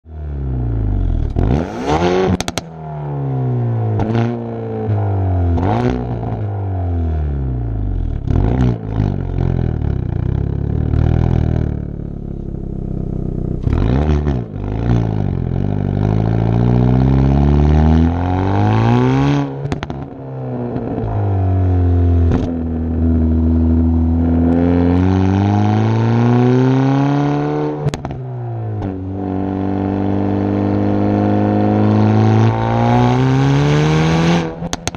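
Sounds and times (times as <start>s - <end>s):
car engine revving: 0.2s - 34.9s
exhaust pops and bangs: 34.6s - 34.9s.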